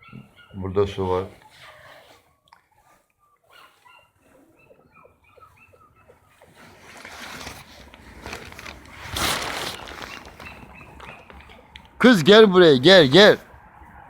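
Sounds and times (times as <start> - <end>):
dogs whimpering: 0.0 - 0.7, 1.4 - 6.5
rustling: 6.4 - 11.7.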